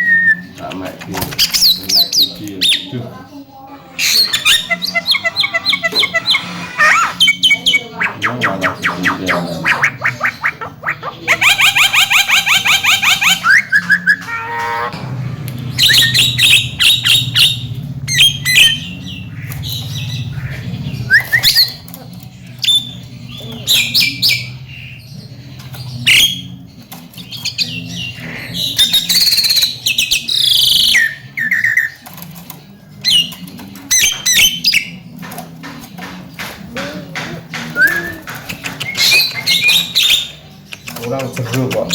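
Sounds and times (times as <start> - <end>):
steady low hum: 14.6 - 29.0.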